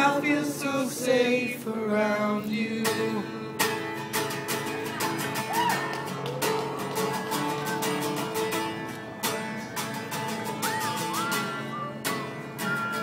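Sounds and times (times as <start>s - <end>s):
acoustic guitar strumming: 0.0s - 13.0s.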